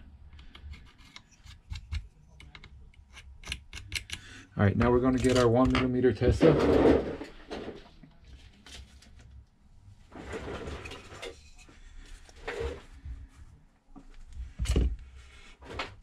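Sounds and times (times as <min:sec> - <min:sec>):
rustles and scrapes of tools: 0:00.3 - 0:04.4, 0:10.0 - 0:16.0.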